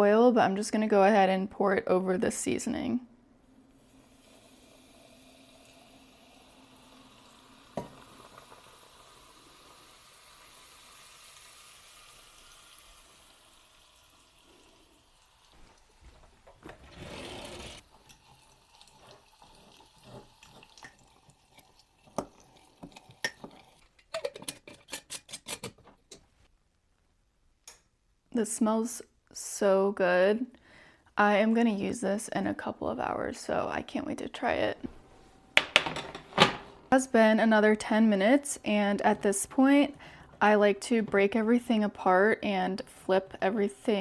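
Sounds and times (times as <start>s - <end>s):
hot oil sizzling: 3.8s - 16.1s.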